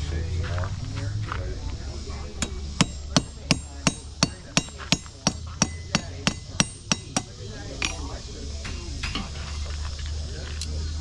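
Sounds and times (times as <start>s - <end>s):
hammer striking iron on anvil: 2.4s - 8.1s.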